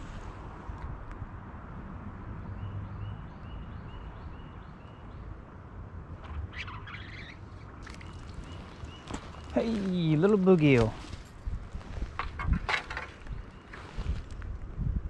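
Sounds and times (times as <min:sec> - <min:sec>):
bird chirping: 0:06.3 - 0:10.9.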